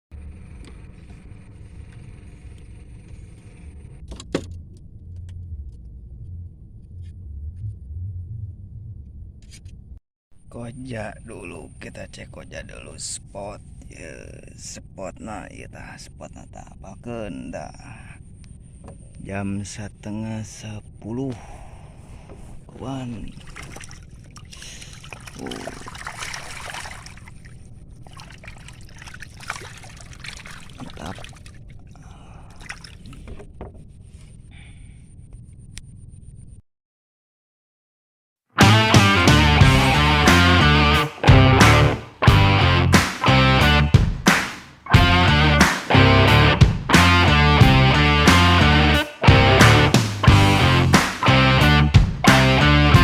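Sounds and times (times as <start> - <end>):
steady low rumble: 0.2 - 10.0, 45.0 - 53.0
water splashing and trickling: 22.8 - 33.4
sharp knock: 44.0 - 44.7.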